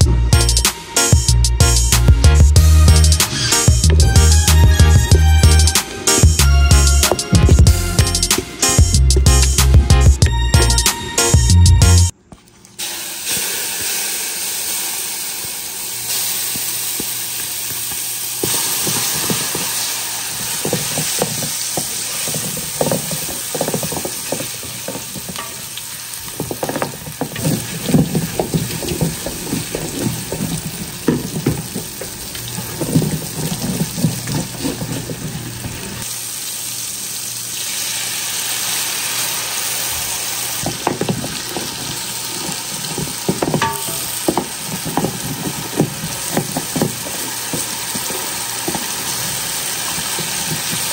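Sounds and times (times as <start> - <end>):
curry frying in hot oil: 12.8 - 50.9
spoon stirring against pot: 18.4 - 36.0, 40.6 - 50.9.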